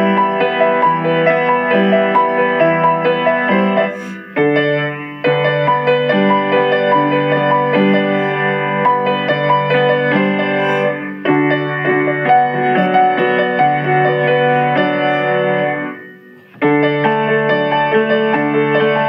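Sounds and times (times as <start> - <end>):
keyboard chords: 0.0 - 19.0.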